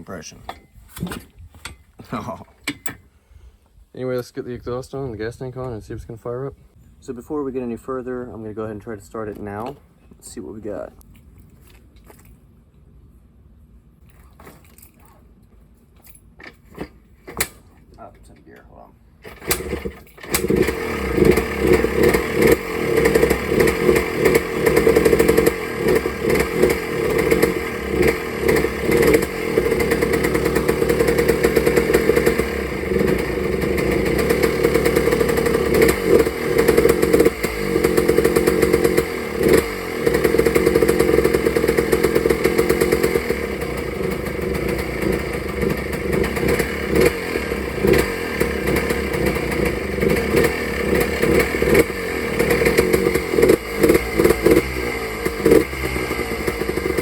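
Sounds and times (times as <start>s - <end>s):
two-stroke engine starting and revving: 19.2s - 57.0s.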